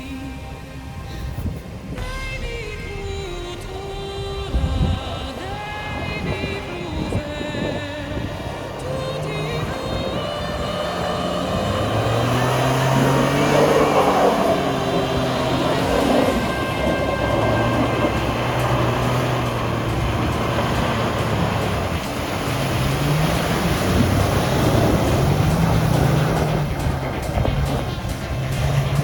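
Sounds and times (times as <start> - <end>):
vehicle engine revving: 1.6 - 29.0.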